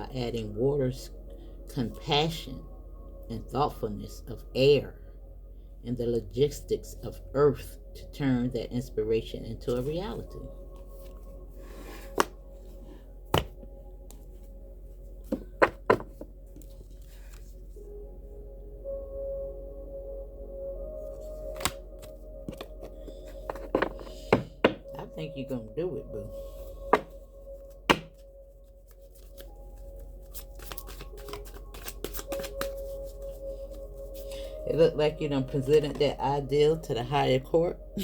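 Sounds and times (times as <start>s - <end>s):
faint ambient music drone: 0.0s - 38.0s
card snap: 30.6s - 32.8s.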